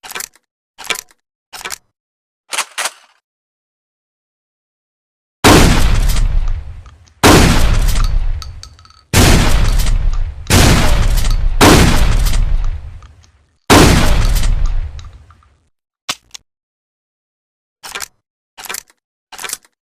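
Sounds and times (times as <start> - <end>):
shotgun blasts echoing: 5.4 - 15.3.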